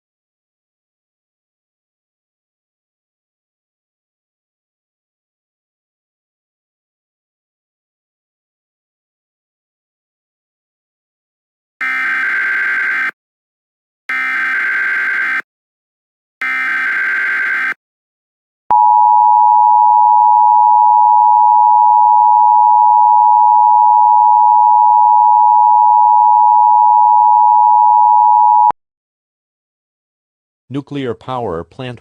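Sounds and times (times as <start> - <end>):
harsh electronic buzz: 11.8 - 13.2, 14.1 - 15.4, 16.4 - 17.8.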